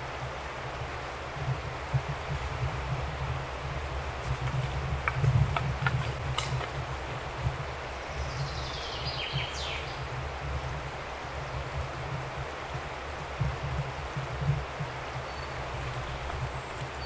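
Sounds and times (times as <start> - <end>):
low outdoor rumble: 0.0 - 17.0.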